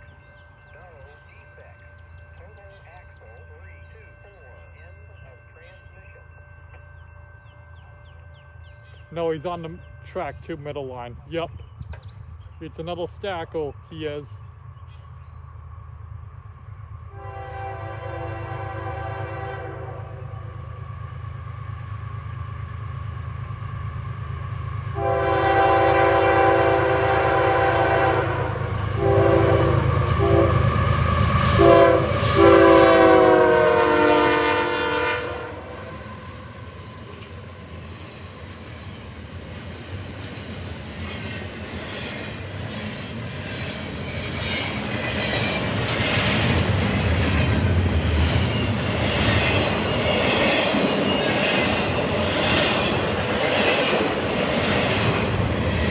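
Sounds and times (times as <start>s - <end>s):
locomotive air horn blasts: 17.1s - 20.4s, 25.0s - 36.1s.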